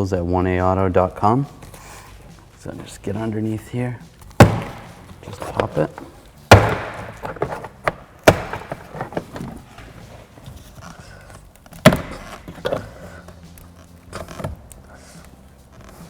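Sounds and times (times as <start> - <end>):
plastic clips popping loose: 4.2 - 9.8.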